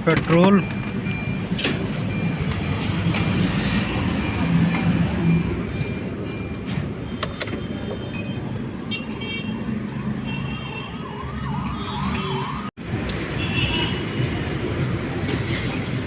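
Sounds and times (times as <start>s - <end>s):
road traffic engines: 0.0s - 16.0s
warbling siren: 10.8s - 12.7s.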